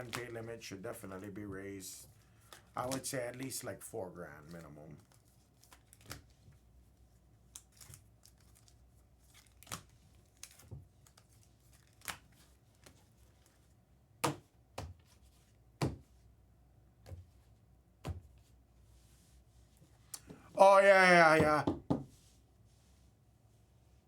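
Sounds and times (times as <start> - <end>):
packaging crinkling and rustling: 7.5 - 13.6
cards tapping and clicking on table: 21.0 - 22.1.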